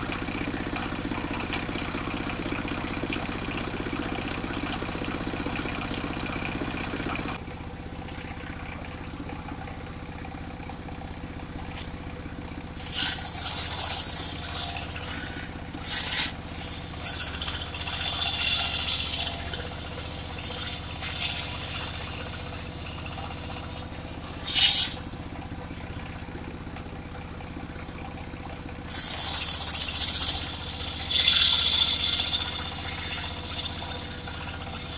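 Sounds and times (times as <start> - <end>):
loud hissing bursts: 12.8 - 23.9, 24.5 - 25.0, 28.9 - 34.9
machine humming: 12.8 - 23.9, 28.9 - 34.9.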